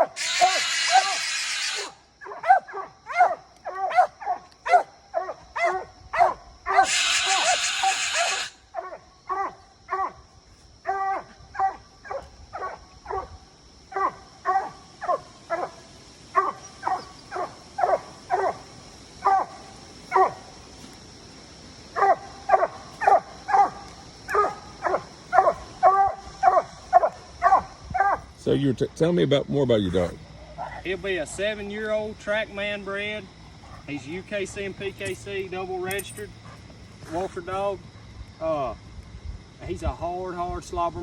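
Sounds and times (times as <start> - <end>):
dog barking: 2.2 - 10.2, 10.9 - 13.3, 13.9 - 15.8, 16.4 - 18.6, 19.2 - 20.4, 22.0 - 28.2.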